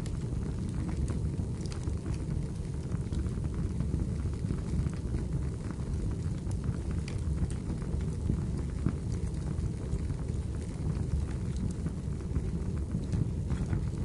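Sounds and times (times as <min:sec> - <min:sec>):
logs crackling and popping: 0:00.0 - 0:14.0
wood fire burning: 0:00.0 - 0:14.0.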